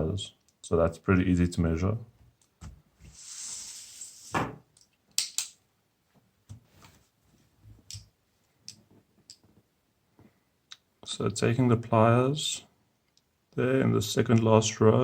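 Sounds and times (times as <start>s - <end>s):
soft hiss: 3.0s - 4.7s.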